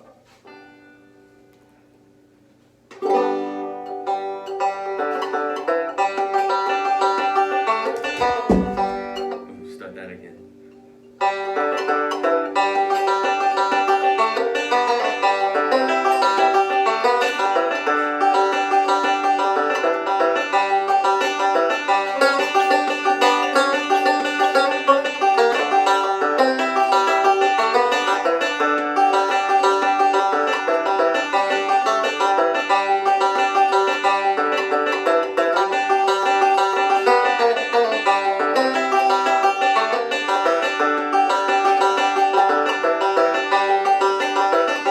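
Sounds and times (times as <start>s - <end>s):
banjo picked in quick runs: 3.0s - 10.2s, 11.2s - 44.9s.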